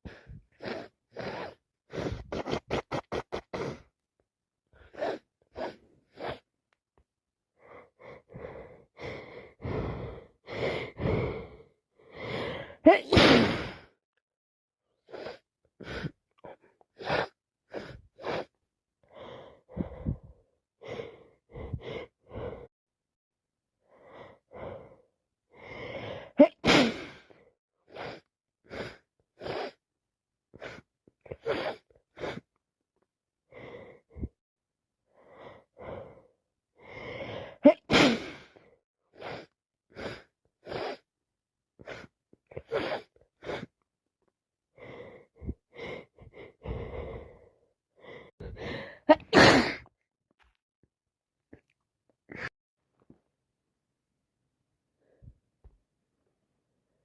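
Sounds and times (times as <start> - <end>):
sniffles: 0.6 - 3.9
gasping inhale: 7.6 - 12.8, 15.0 - 22.7, 23.9 - 26.4, 35.1 - 37.6, 44.8 - 49.9
person sneezing: 12.9 - 13.9, 26.4 - 27.2, 37.6 - 38.4, 49.1 - 49.9.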